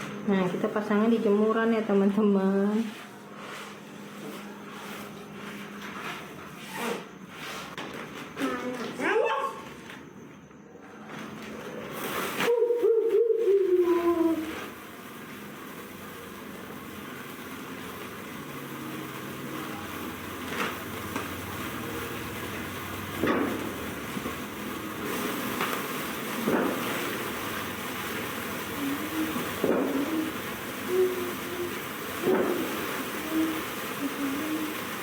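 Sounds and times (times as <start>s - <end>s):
fireworks hissing: 0.0s - 7.8s, 11.7s - 35.0s
fireworks popping: 11.8s - 35.0s.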